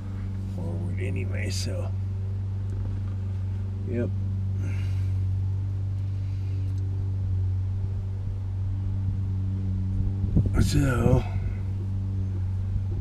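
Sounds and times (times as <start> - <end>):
faint rustles: 0.0 - 13.0
low machine hum: 0.0 - 13.0.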